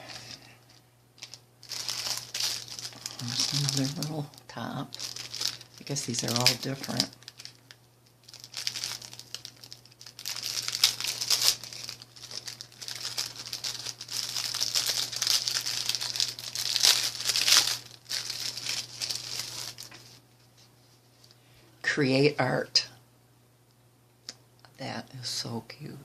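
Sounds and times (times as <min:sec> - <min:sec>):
plastic bags crinkling: 0:00.0 - 0:20.2
faint low hum: 0:00.0 - 0:26.0.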